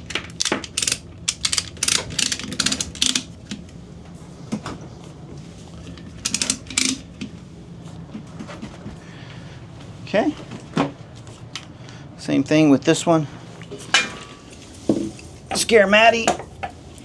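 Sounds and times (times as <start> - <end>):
ratchet strap clicking: 0.0 - 3.4, 6.2 - 7.0.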